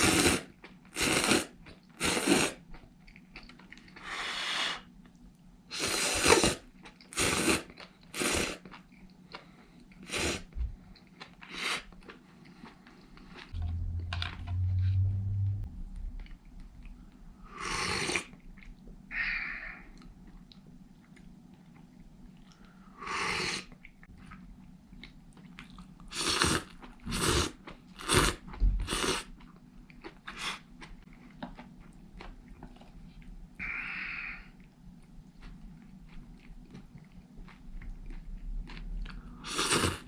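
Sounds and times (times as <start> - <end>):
noodle slurps: 0.0 - 2.6, 5.7 - 8.7, 10.0 - 10.6, 17.5 - 18.4, 39.4 - 40.0
person chewing: 5.9 - 13.6, 23.4 - 33.3, 34.6 - 40.0
low hum: 13.6 - 17.5.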